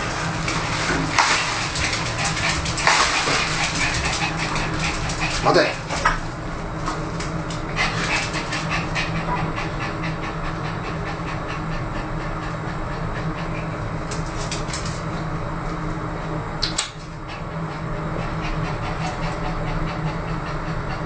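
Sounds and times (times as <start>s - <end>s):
steady low hum: 0.0s - 21.0s
small dog panting: 1.2s - 6.1s, 7.6s - 14.7s, 17.1s - 21.0s.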